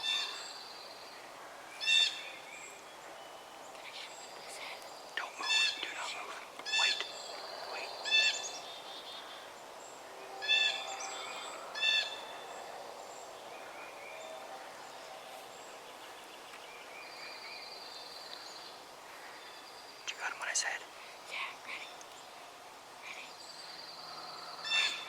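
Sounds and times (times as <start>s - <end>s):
loud high-pitched bird calls: 0.0s - 0.6s, 5.4s - 9.5s, 10.4s - 12.4s, 24.4s - 25.0s
faint birdsong: 0.0s - 25.0s.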